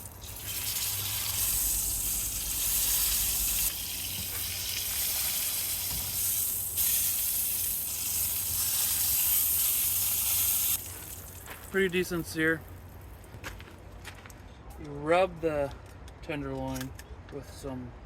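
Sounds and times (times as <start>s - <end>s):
meat sizzling in a pan: 0.0s - 10.8s.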